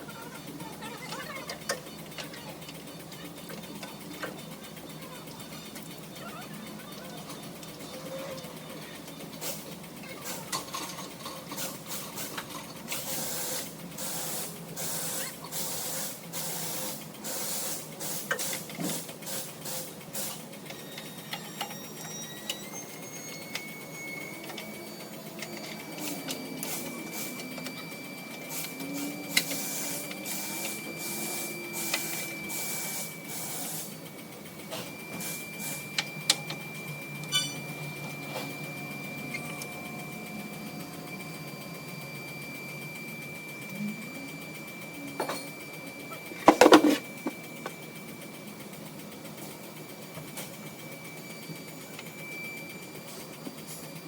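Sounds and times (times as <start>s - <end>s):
clicks and metal knocks: 46.4s - 47.4s
hand tool scraping: 46.4s - 47.4s.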